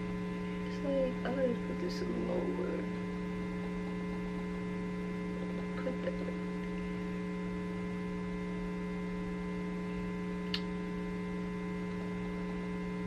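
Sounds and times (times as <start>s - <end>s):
electrical mains hum: 0.0s - 13.0s
short click: 10.5s - 10.7s.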